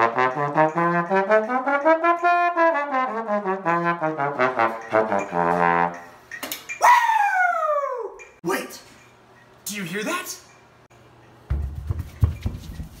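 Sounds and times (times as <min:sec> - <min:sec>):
brass instrument playing: 0:00.0 - 0:06.2.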